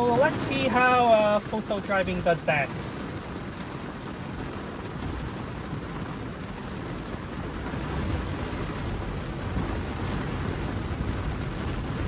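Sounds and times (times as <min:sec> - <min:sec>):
hard rain on car roof: 0:00.0 - 0:12.0
tyre and road noise: 0:02.7 - 0:12.0.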